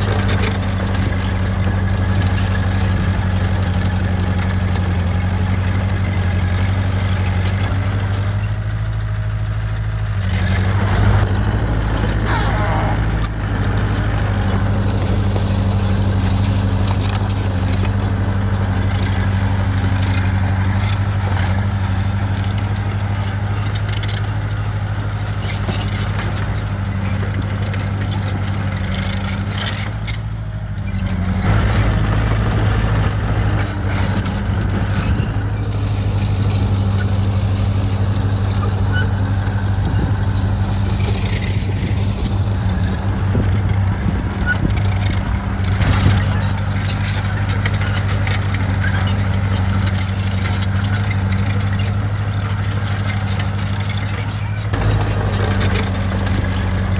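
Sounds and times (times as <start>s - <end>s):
diesel engine of heavy machinery: 0.0s - 56.9s.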